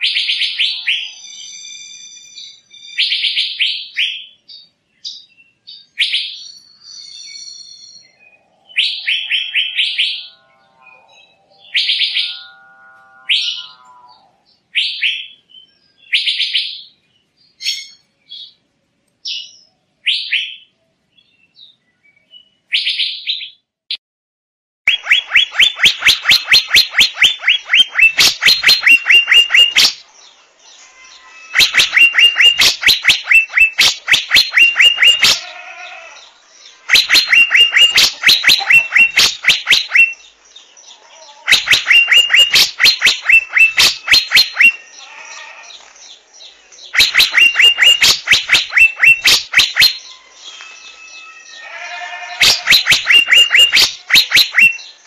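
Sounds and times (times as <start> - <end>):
bird calling in rapid sharp notes: 13.2 - 15.4, 24.9 - 30.0, 31.0 - 35.7, 36.6 - 40.4, 41.4 - 45.9, 46.8 - 55.0.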